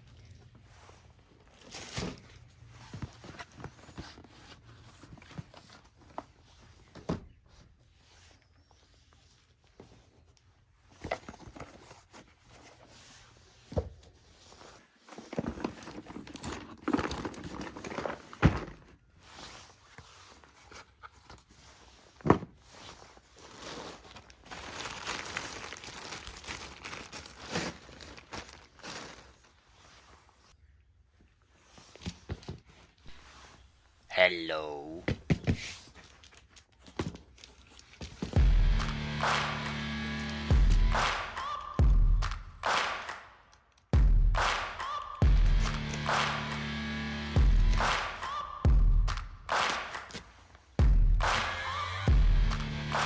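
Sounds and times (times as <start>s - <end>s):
packaging crinkling and tearing: 23.2s - 29.6s, 35.8s - 38.4s.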